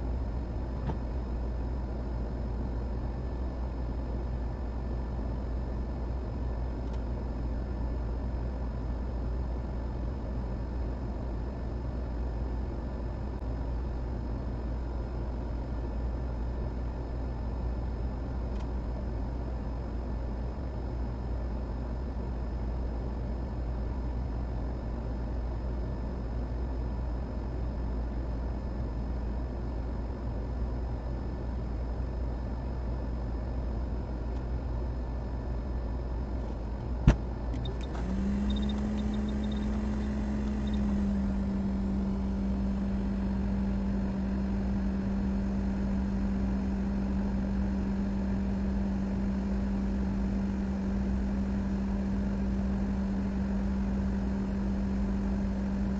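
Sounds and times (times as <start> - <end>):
low electrical hum: 0.0 - 55.9
faint steady tones: 37.5 - 43.8.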